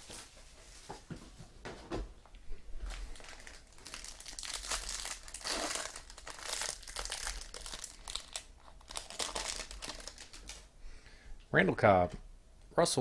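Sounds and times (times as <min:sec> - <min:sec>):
wrappers crinkling and rustling: 0:02.8 - 0:10.7.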